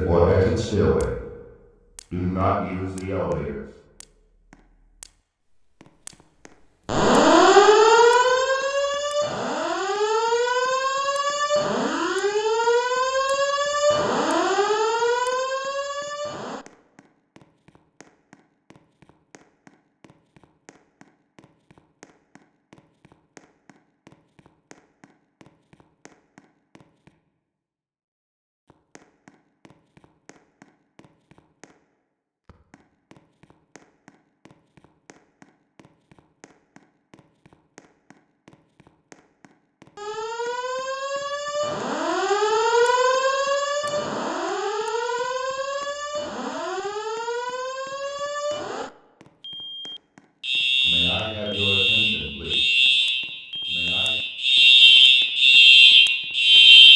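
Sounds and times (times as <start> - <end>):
faint rapid alarm pulsing: 6.9 - 16.7, 40.0 - 56.9
rising whoop alarm tones: 6.9 - 16.7, 40.0 - 49.0, 50.5 - 56.9.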